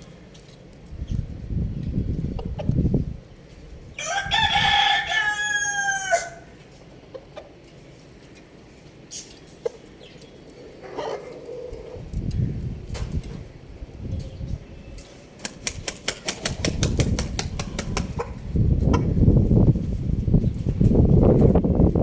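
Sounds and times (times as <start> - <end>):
rooster crowing: 4.0 - 6.6.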